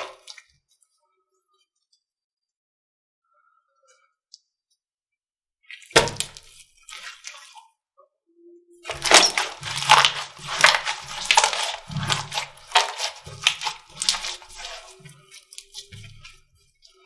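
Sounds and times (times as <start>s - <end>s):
slime squelching: 5.7s - 7.7s, 8.8s - 17.0s.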